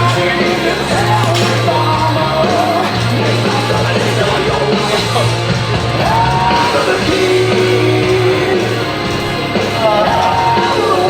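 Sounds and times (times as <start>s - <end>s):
rock music: 0.0s - 11.0s.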